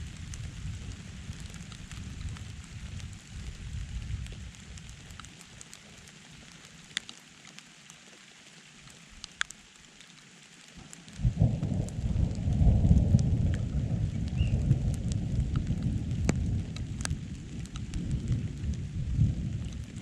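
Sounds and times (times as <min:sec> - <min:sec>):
low thunder rumble: 0:00.0 - 0:04.7, 0:11.1 - 0:20.0
light rain: 0:00.0 - 0:20.0.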